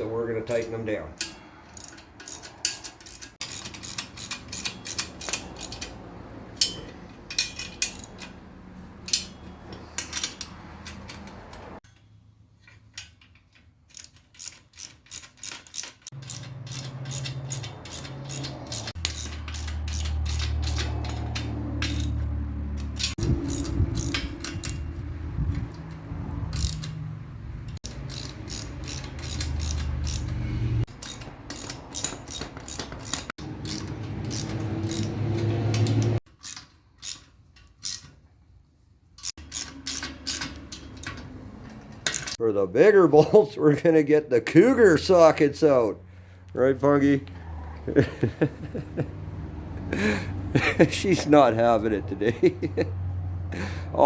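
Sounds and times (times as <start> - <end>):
ratchet wrench clicking: 1.2 - 6.0, 6.6 - 8.4, 13.0 - 22.2, 22.8 - 25.0, 25.8 - 27.0, 27.8 - 38.1, 39.2 - 41.3.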